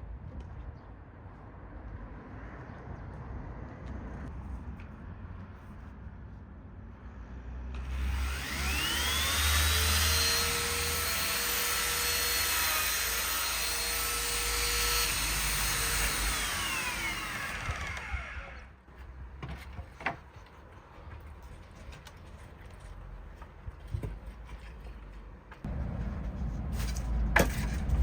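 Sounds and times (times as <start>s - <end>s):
power tool motor whining: 7.8s - 18.7s.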